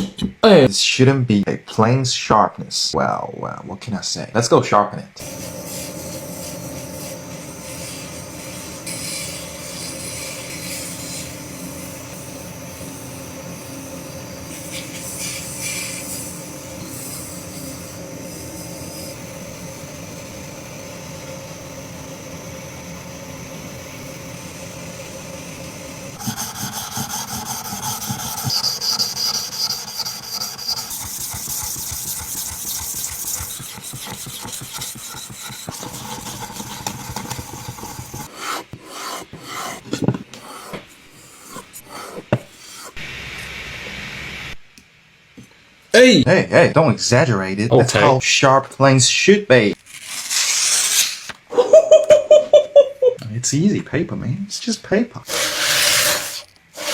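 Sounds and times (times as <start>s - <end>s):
metal rubbing on abrasive: 5.2s - 19.2s, 26.2s - 43.0s, 49.8s - 51.4s, 55.3s - 56.9s.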